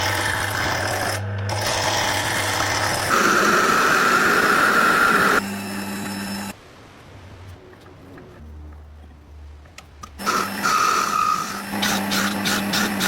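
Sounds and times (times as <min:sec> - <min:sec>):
power tool cutting iron: 0:00.0 - 0:06.6, 0:10.2 - 0:13.0.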